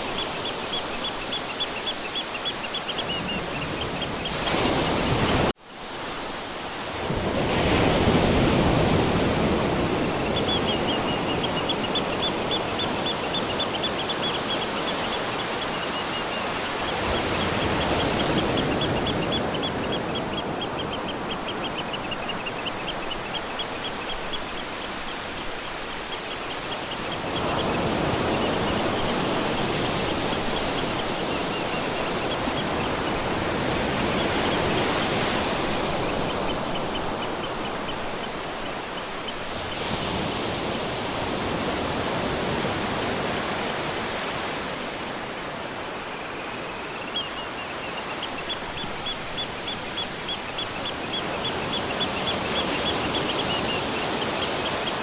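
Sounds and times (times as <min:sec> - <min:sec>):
ocean waves breaking: 0:00.0 - 0:55.0.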